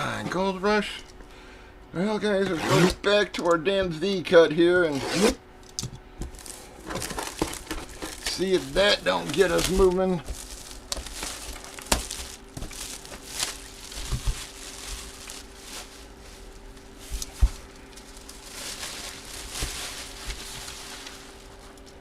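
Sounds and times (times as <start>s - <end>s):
faint electrical hum: 0.0s - 22.0s
packaging being torn open: 6.4s - 15.9s.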